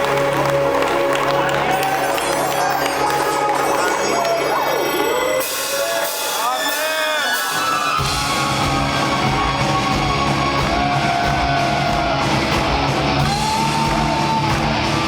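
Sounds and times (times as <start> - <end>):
metal band playing live: 5.4 - 15.0.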